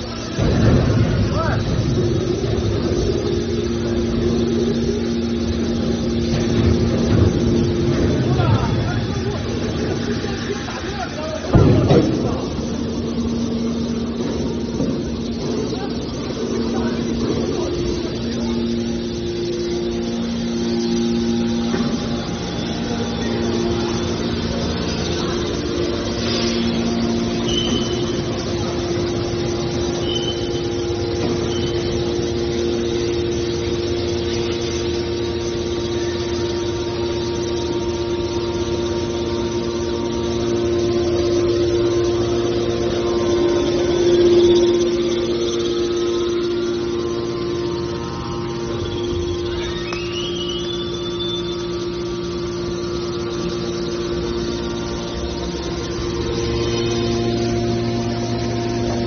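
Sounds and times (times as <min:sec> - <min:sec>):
hydraulic baler mechanical drone: 0:00.0 - 0:59.0
hydraulic pump whine: 0:00.0 - 0:59.0
high squeaks: 0:15.2 - 0:59.0.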